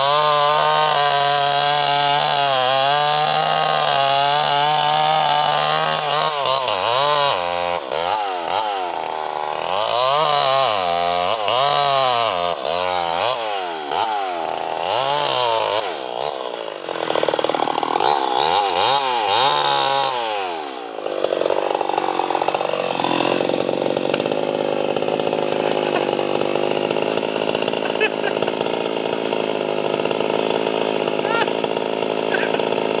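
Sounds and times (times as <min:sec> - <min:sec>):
chainsaw cutting wood: 0:00.0 - 0:33.0.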